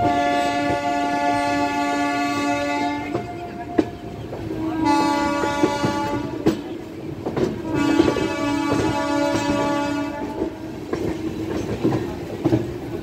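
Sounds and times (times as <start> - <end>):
locomotive horn long blast: 0.0 - 3.8, 4.5 - 6.5, 7.6 - 10.6
train wheels clattering over rail joints: 2.0 - 13.0.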